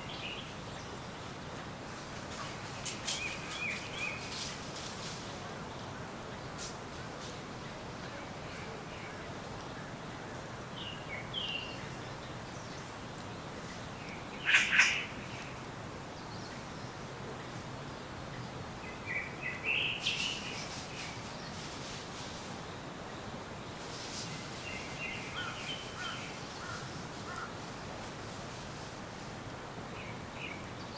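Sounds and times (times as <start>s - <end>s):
steady background hiss: 0.0s - 30.9s
wild birds calling: 10.8s - 17.0s, 23.8s - 27.9s.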